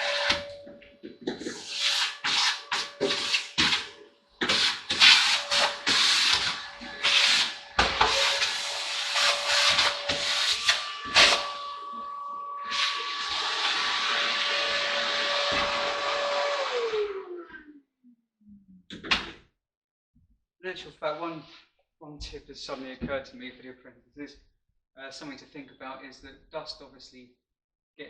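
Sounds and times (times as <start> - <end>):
vacuum cleaner motor whine: 0.0 - 0.8, 5.0 - 17.5
higher whine: 10.9 - 13.2.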